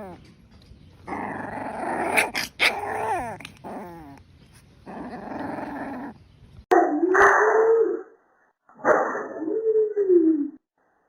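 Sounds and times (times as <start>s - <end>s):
dog growling: 1.0s - 4.2s, 4.8s - 6.2s
dog whining: 1.1s - 4.2s.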